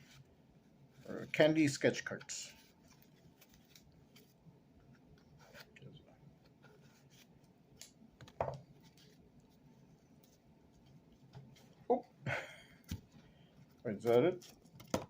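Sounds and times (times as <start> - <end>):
paper cards rustling: 2.0 - 4.4.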